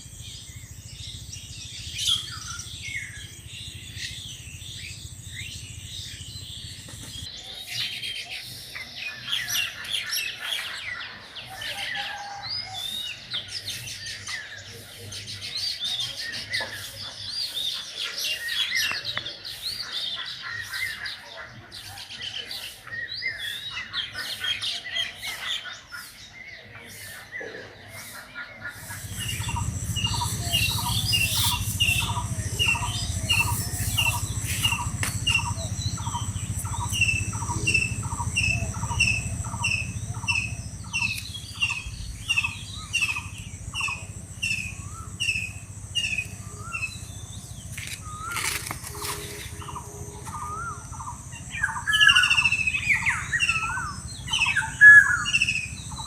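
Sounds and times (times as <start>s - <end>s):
low steady rumble: 0.0s - 7.3s, 28.7s - 56.0s
birds chirping: 0.0s - 56.0s.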